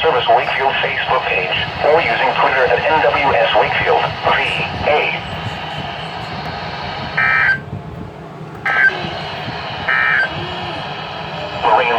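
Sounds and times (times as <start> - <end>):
radio hiss: 0.0 - 7.6, 8.6 - 11.9
buzzy digital data tones: 2.0 - 7.6, 8.7 - 10.6.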